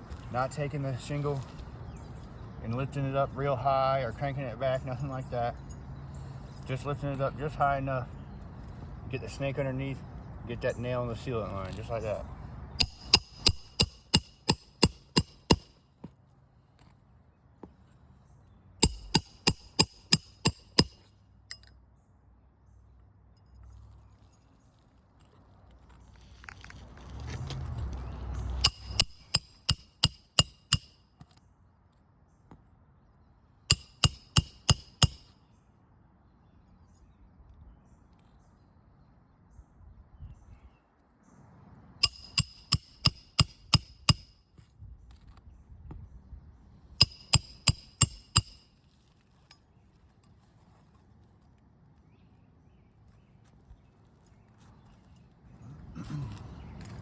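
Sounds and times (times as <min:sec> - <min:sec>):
rustle: 0:00.0 - 0:03.0, 0:10.6 - 0:13.4, 0:23.3 - 0:29.0, 0:48.6 - 0:57.0
hammer striking metal: 0:12.8 - 0:15.7, 0:18.8 - 0:21.0, 0:28.6 - 0:31.0, 0:33.7 - 0:35.2, 0:42.0 - 0:44.3, 0:47.0 - 0:48.6.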